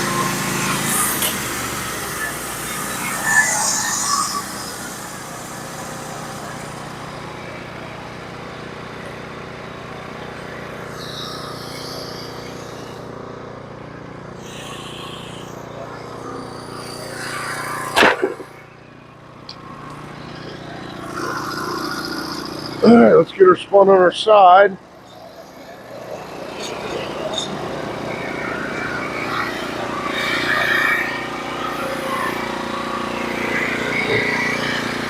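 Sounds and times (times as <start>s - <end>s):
sawmill engine running: 0.0s - 35.0s
loud clunk: 18.0s - 18.6s.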